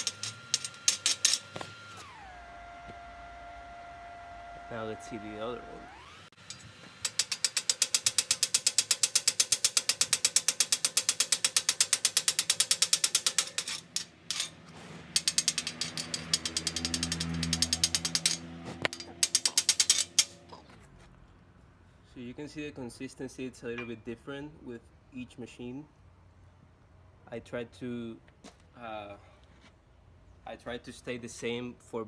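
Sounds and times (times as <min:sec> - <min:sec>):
rapid metal-on-metal tapping: 0:07.0 - 0:14.5, 0:15.2 - 0:20.4.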